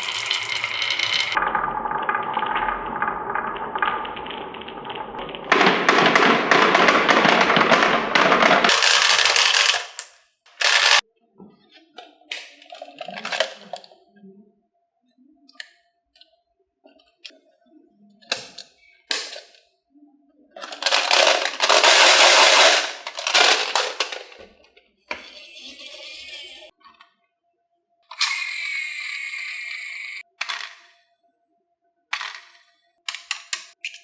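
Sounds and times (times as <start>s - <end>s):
marbles rattling on wooden track: 0.0s - 11.0s, 20.6s - 24.4s
marble clicks and knocks: 1.0s - 9.8s.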